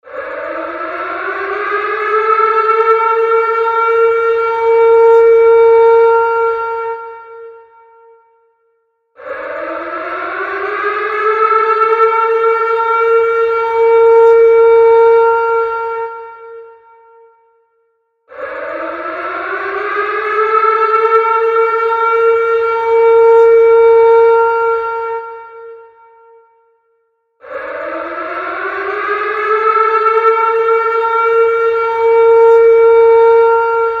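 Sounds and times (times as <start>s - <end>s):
warning siren winding up: 9.3s - 15.6s, 18.4s - 24.8s, 27.5s - 34.0s.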